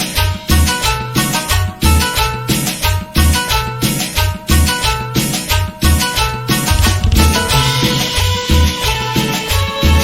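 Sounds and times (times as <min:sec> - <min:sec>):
dance music with bass beat: 0:06.7 - 0:08.2.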